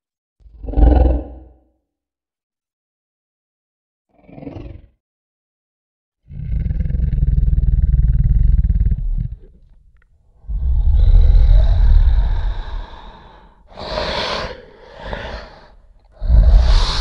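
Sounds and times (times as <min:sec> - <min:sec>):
breathy bursts: 0:10.4 - 0:17.0
monster roaring: 0:10.4 - 0:17.0.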